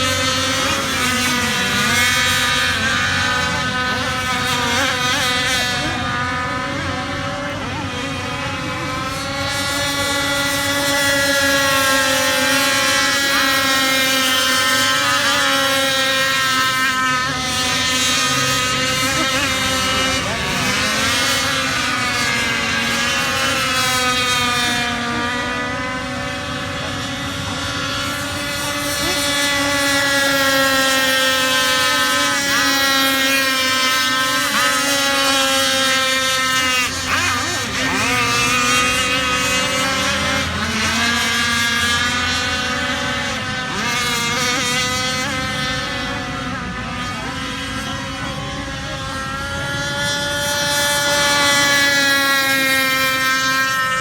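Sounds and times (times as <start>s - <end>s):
model speed boat motor: 0.0s - 54.0s.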